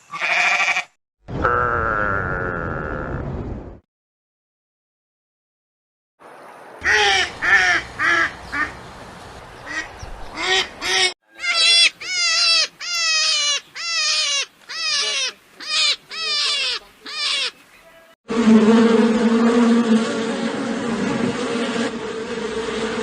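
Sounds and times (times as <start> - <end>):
ducks quacking: 6.8 - 8.8, 9.6 - 17.6.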